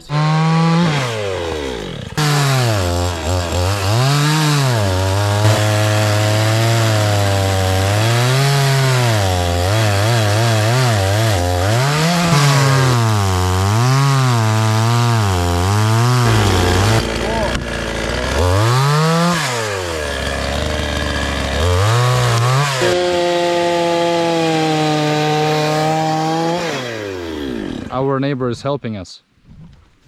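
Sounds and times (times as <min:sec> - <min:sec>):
engine revving up and down: 0:00.0 - 0:17.6.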